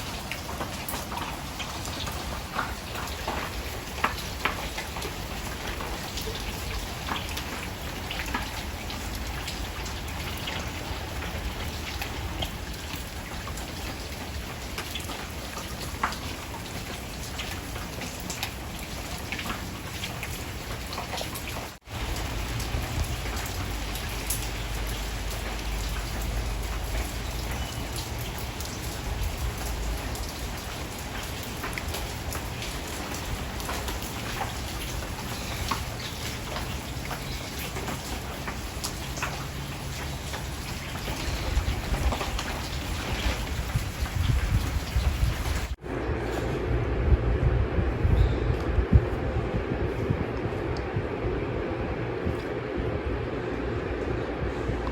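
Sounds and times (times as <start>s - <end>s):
steady rain with dripping drops: 0.0s - 54.9s
low rumble: 43.6s - 54.9s.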